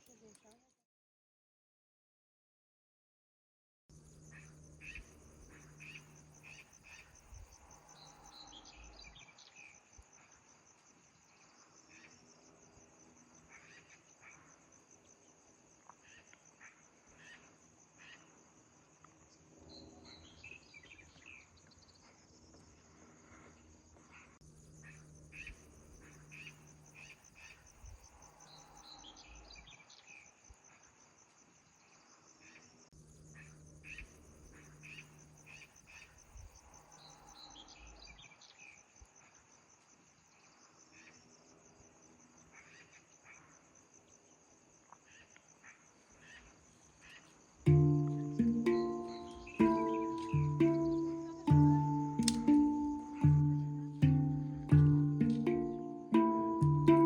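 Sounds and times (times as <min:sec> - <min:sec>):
insects trilling: 0:03.9 - 0:54.4
bird chirping: 0:47.7 - 0:57.0.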